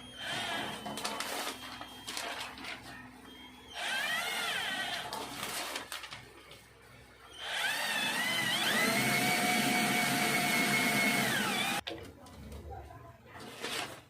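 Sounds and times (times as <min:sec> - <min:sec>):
small electric motor whirring: 0:07.4 - 0:11.8.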